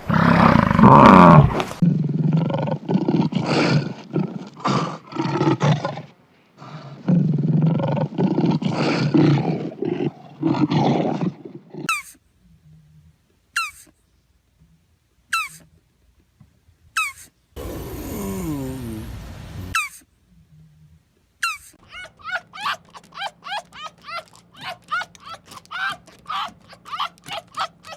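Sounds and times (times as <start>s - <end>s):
deep animal grunts: 0.0s - 11.9s, 22.0s - 27.9s
large animal roaring: 0.0s - 11.9s.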